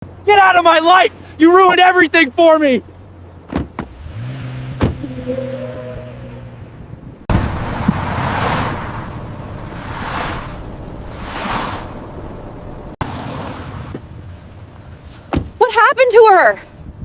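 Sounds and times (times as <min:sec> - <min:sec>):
car engine humming: 0:02.3 - 0:15.7
gusting snowstorm wind: 0:04.0 - 0:15.2.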